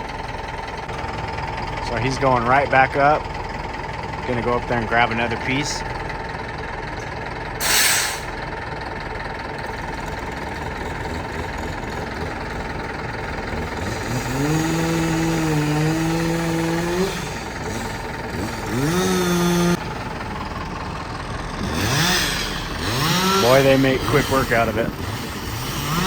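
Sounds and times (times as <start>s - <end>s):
machinery engine drone: 0.0s - 26.0s
motor revving: 10.0s - 20.1s, 21.4s - 26.0s.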